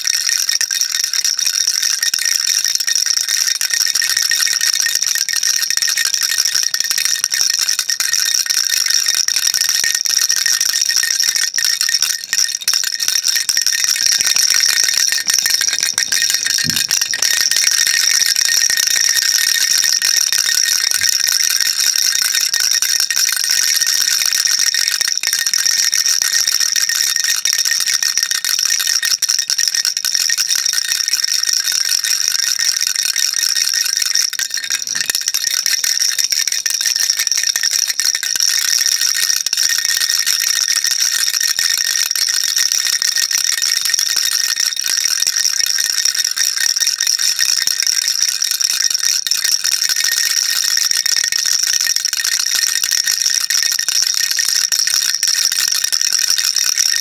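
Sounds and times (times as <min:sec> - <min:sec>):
baby rattle shaking: 0:01.7 - 0:39.3.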